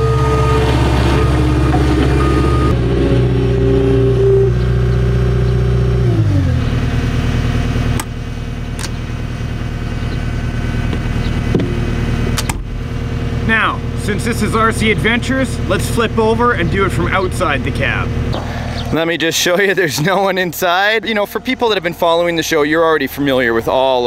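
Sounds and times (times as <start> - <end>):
diesel engine running: 0.0 - 24.0.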